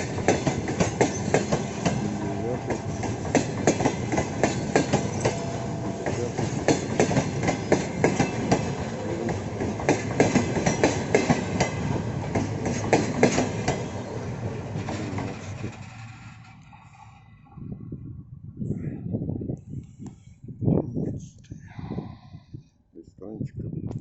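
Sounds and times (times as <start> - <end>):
train wheels clacking over rail joints: 0.0 - 17.2
train rumble: 0.0 - 18.1.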